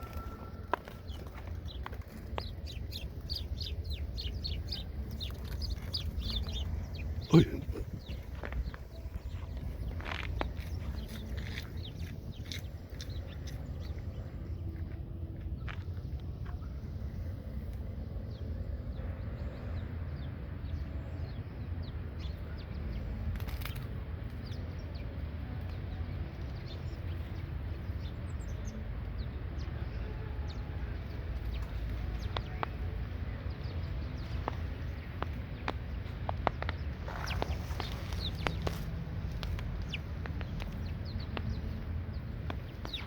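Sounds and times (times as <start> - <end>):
birds chirping and clucking: 0.0 - 14.8, 30.4 - 43.0
steady low rumble: 0.0 - 43.0.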